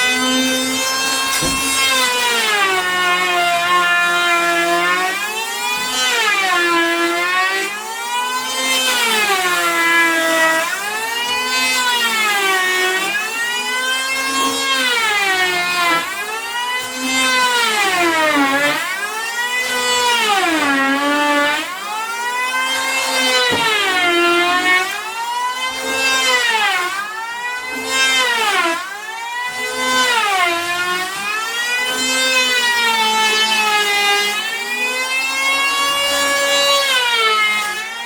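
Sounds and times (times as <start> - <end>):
electric planer cutting wood: 0.0 - 38.0.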